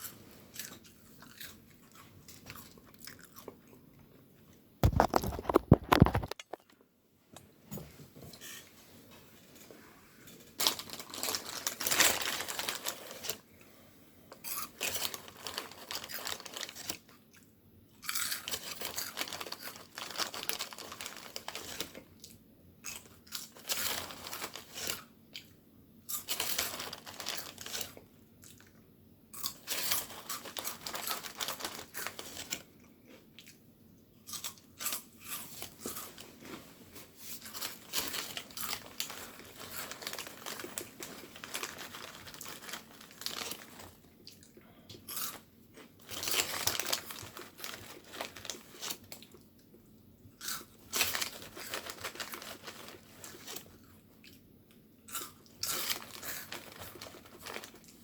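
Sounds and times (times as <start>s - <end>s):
person chewing crunchy food: 0.0s - 3.9s, 4.8s - 6.7s, 14.4s - 25.5s, 37.2s - 49.5s, 50.3s - 52.4s, 53.2s - 58.0s
handling noise: 4.8s - 6.5s.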